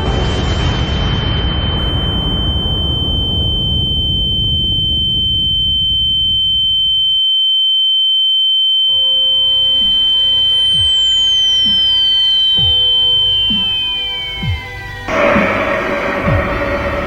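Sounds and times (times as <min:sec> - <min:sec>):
explosion rumble: 0:01.8 - 0:05.1, 0:15.1 - 0:17.0
high-pitched ringing tone: 0:01.8 - 0:17.0
faint music with sustained notes: 0:11.2 - 0:17.0.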